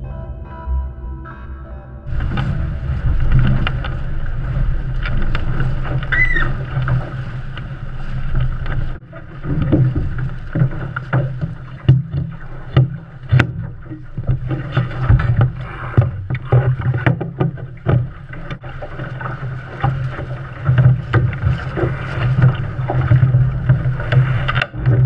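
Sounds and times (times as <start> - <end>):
music: 0.0 - 3.6
wind on microphone: 0.0 - 25.0
water rushing along hull: 1.9 - 25.0
high squeak: 6.1 - 6.6.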